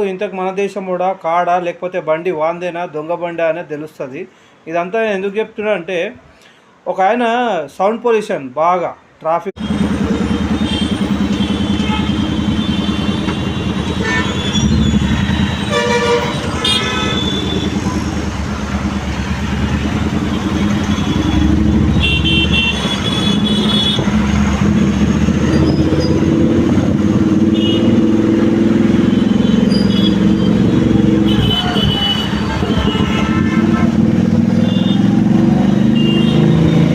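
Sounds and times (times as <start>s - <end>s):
car horns honking: 9.6s - 18.3s, 20.1s - 24.2s, 27.2s - 36.9s
drone of vehicle engines: 9.6s - 36.9s.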